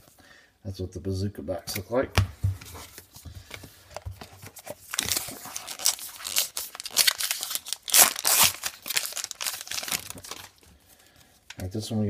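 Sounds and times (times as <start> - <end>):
card pack wrapper tearing: 4.4 - 10.7.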